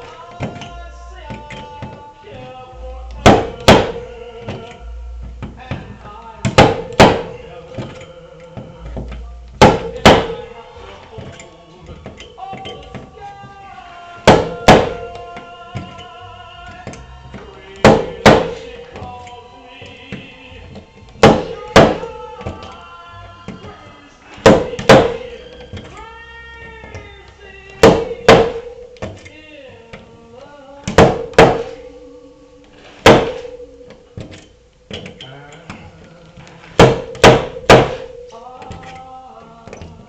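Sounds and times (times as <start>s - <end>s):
background music: 0.0s - 40.0s.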